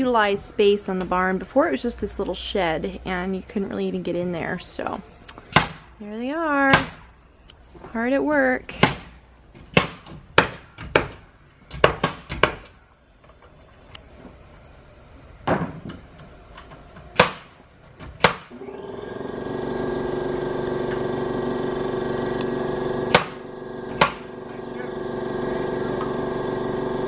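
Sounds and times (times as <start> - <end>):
steady multi-tone hum: 0.0 - 18.6, 19.6 - 27.0
hammer striking wood: 5.5 - 5.8, 8.8 - 12.7, 17.2 - 17.5, 18.1 - 18.6, 23.1 - 24.3.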